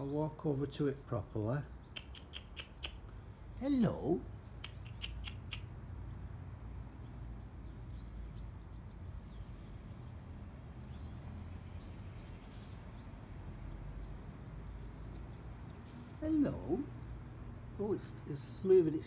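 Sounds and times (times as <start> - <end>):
faint bird chirps: 1.8 - 3.2, 4.6 - 6.3.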